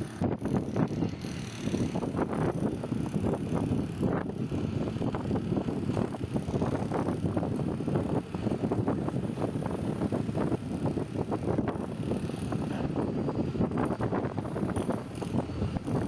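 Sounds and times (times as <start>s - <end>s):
diesel backhoe loader rumbling: 0.0s - 16.0s
rattling clatter: 0.4s - 16.0s.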